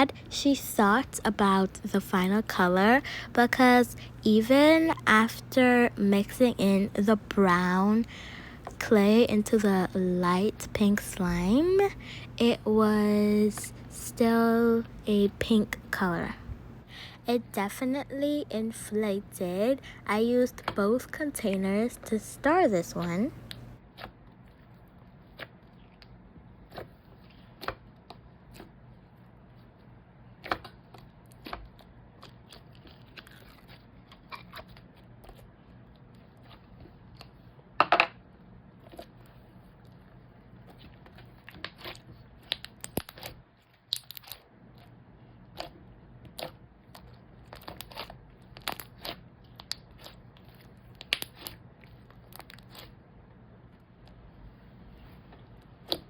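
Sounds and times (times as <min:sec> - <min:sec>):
faint steady hum: 0:00.0 - 0:56.0
slime squishing with wet clicks: 0:41.0 - 0:52.9.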